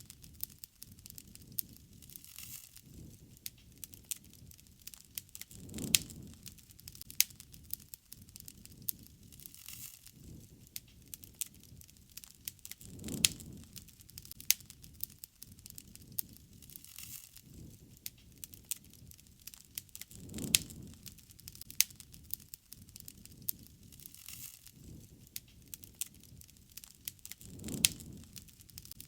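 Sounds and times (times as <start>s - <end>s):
campfire crackling and popping: 0.0s - 29.0s.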